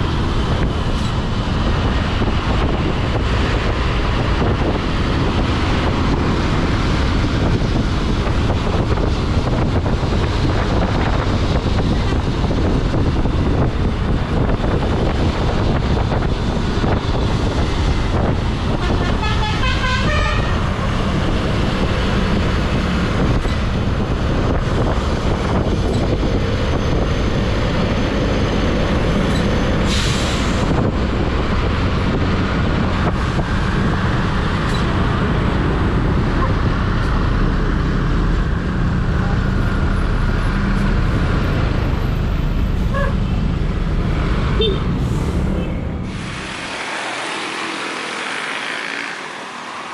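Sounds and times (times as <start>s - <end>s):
bus engine and road rumble: 0.0s - 49.9s
musical bus horn: 18.7s - 21.0s, 44.6s - 44.9s.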